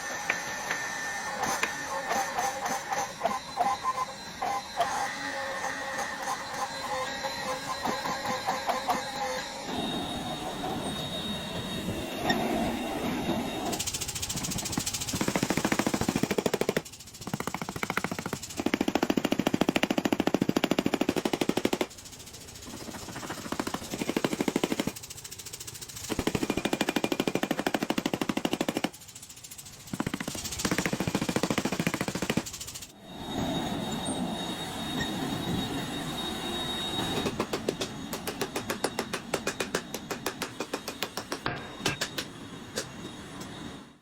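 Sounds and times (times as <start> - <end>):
power hammer pounding steel: 37.1 - 42.9.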